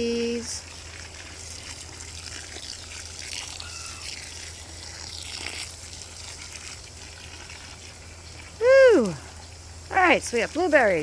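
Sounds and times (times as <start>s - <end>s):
water spraying on plants: 0.0s - 11.0s.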